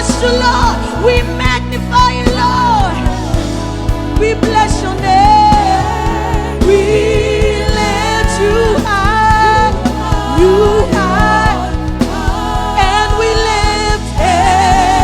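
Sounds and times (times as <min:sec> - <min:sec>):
band with steady low notes: 0:00.0 - 0:15.0
voices singing gospel: 0:00.0 - 0:15.0
drum beat: 0:00.1 - 0:15.0.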